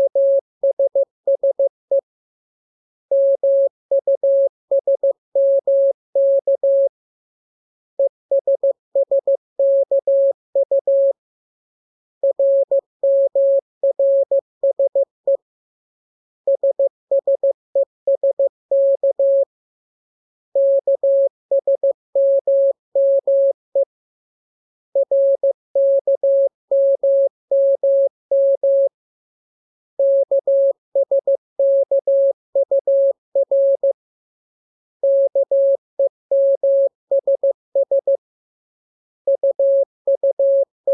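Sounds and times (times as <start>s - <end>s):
morse code beeps: 30.0s - 33.9s, 35.0s - 38.1s, 39.3s - 40.9s.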